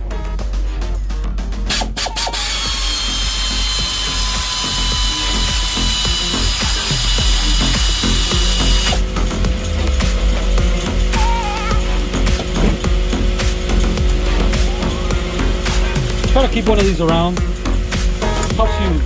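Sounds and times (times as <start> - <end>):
background music: 0.0 - 19.0
mechanical noise with high whine: 0.0 - 19.0
ratchet wrench clicking: 1.7 - 9.4.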